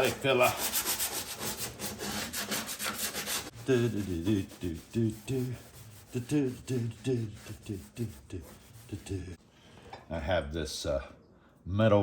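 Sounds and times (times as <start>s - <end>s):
sanding steel: 0.0s - 9.4s.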